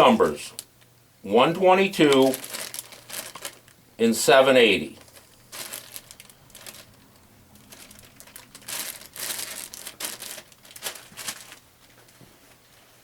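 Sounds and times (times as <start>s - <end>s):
packaging crinkling and rustling: 2.0s - 3.8s, 4.9s - 12.2s.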